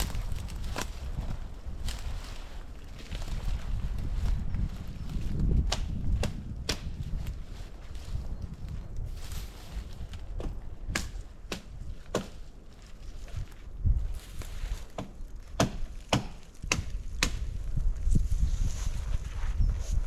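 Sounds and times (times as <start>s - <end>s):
axe chopping wood: 5.6s - 7.0s, 10.4s - 12.4s, 14.9s - 17.5s.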